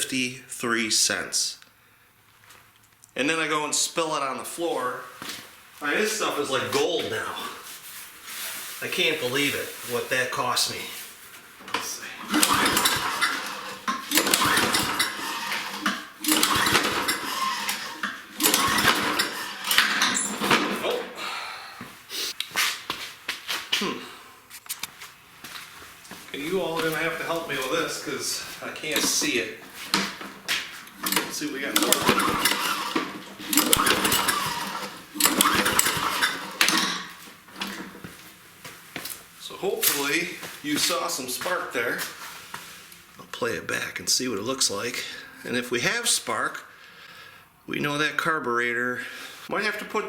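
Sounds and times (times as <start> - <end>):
pull-starter cranking mower engine: 11.6 - 21.1, 26.5 - 38.0.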